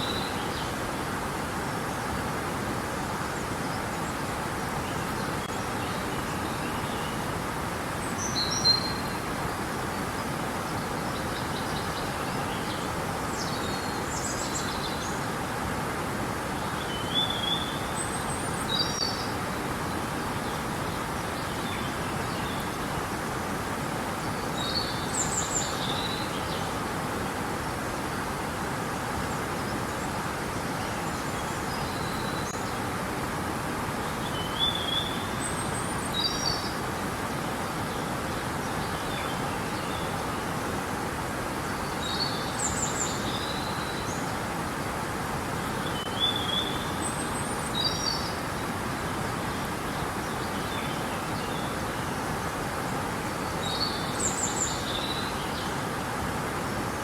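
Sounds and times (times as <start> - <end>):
river water flowing: 0.0 - 57.0.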